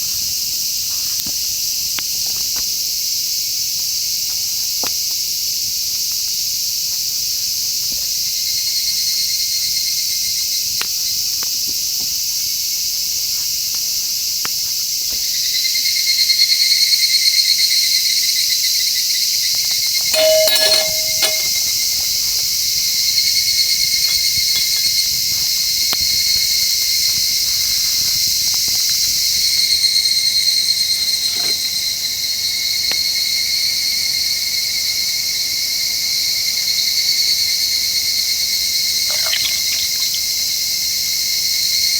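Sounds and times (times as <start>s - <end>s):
clink-like ring: 20.0s - 21.8s.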